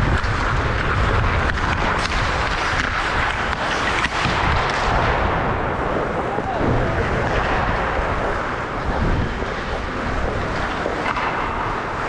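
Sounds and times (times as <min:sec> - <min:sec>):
rink noise with low rumble: 0:00.0 - 0:12.0
sharp clacks of hockey sticks: 0:10.8 - 0:12.0.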